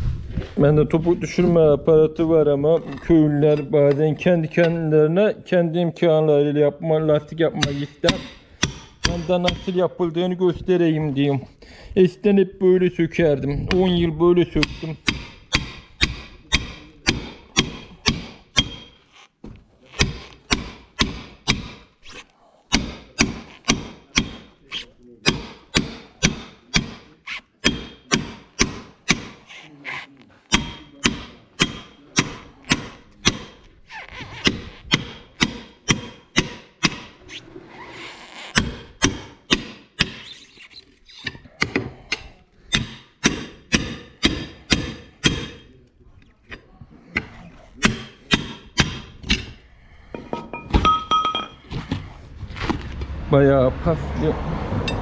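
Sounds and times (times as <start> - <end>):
hammer striking steel rim: 7.6 - 9.9, 14.6 - 19.0, 20.0 - 21.9, 22.7 - 24.6, 25.2 - 29.4, 30.5 - 33.6, 34.5 - 37.2, 38.6 - 40.2, 42.7 - 45.7, 47.8 - 49.5, 50.2 - 51.6.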